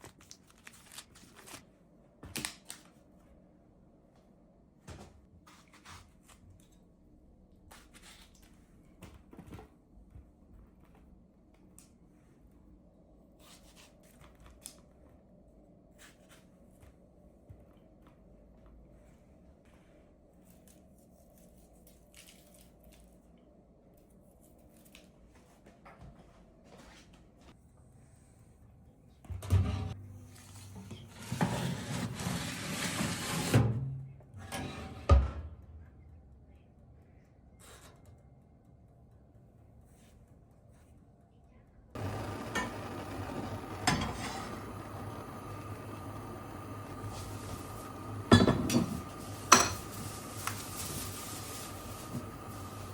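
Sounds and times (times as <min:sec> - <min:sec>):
scraping or rubbing: 0:30.6 - 0:33.6.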